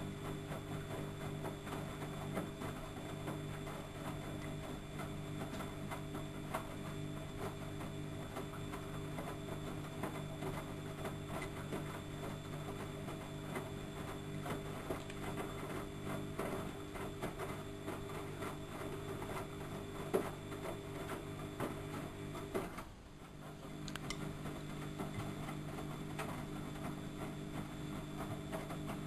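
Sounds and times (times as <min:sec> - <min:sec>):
washing machine motor hum: 0:00.0 - 0:29.0
ticks and clicks: 0:23.8 - 0:24.3.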